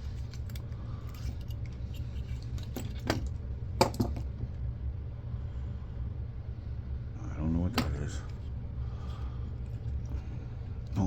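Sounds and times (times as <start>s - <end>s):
small parts clicking and clinking: 0.0s - 4.2s
steady low hum: 0.0s - 11.0s.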